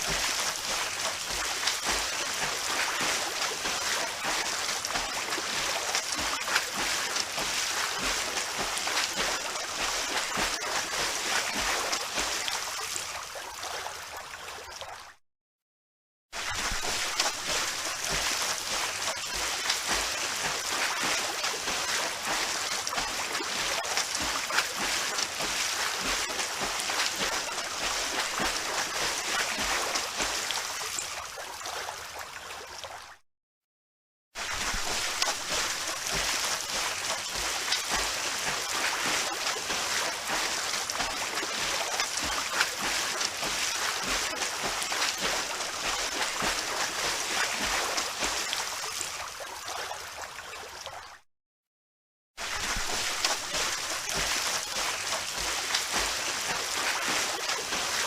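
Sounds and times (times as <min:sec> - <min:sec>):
water splashing from swim strokes: 0:00.0 - 0:15.2, 0:16.4 - 0:33.2, 0:34.4 - 0:51.2, 0:52.4 - 0:58.0.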